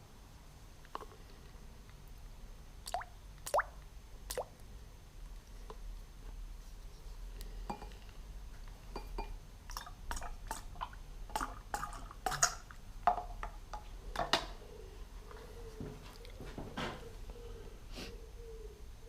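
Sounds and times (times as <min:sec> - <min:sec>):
liquid dripping and splashing: 0:02.9 - 0:04.6.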